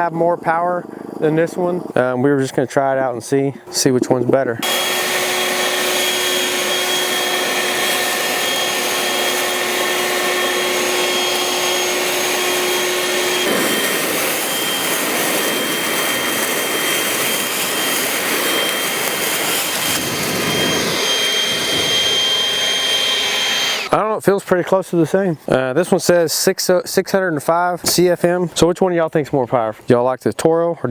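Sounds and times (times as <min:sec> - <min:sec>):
leaf blowers whining: 0:04.6 - 0:24.0.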